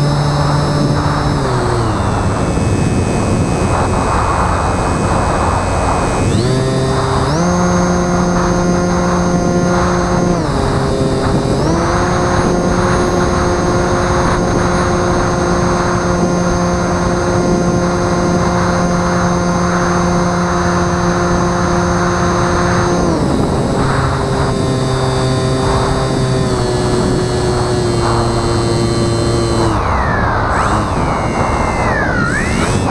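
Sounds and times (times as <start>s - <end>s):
electric motor and propeller whining: 0.0s - 32.9s
wind noise: 0.0s - 32.9s.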